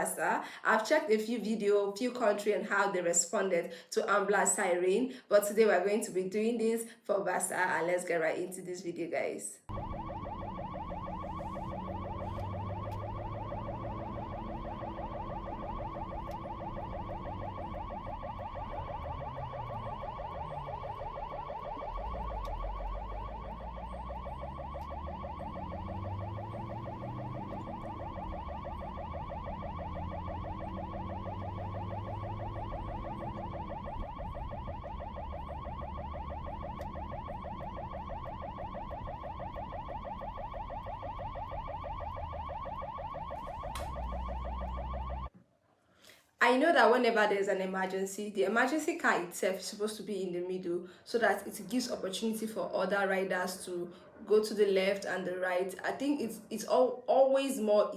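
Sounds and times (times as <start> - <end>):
ambulance siren warbling: 9.7 - 45.3.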